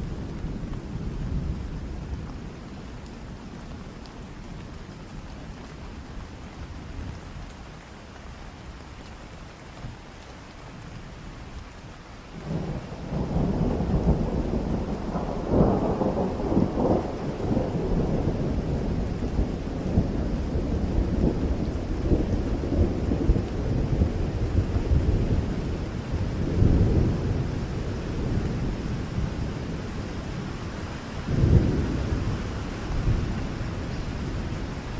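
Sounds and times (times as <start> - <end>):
steady rain falling: 0.0 - 34.9
low roll of thunder: 12.4 - 34.9.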